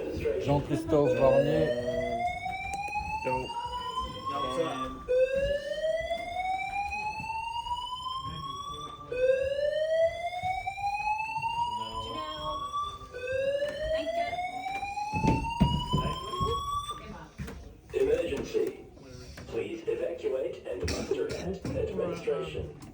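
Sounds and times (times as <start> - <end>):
fire alarm whooping: 0.0 - 17.2
low thumps: 13.3 - 16.9.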